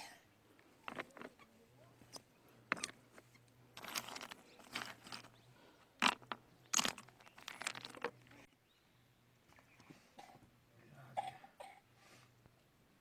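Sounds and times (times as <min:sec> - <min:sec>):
stone crunching and scraping: 0:03.8 - 0:05.4, 0:06.0 - 0:08.4.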